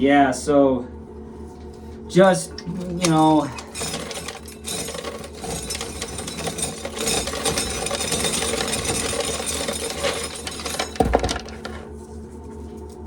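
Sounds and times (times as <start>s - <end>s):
fan humming: 1.2s - 12.4s
corn kernels clattering: 2.6s - 11.9s.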